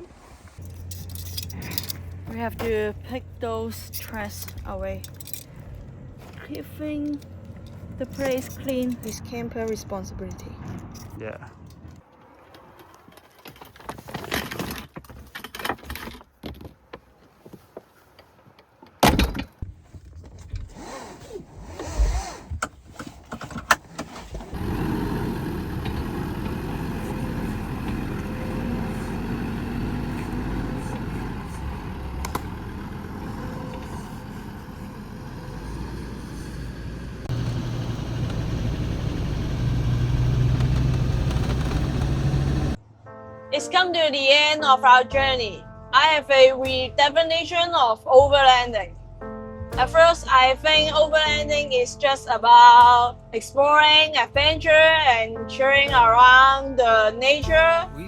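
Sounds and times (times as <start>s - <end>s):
vehicle engine and road noise: 0.0s - 42.9s
camp gear clattering and rustling: 0.6s - 2.8s, 3.9s - 9.2s, 11.8s - 20.8s
deep steady hum: 24.6s - 42.8s.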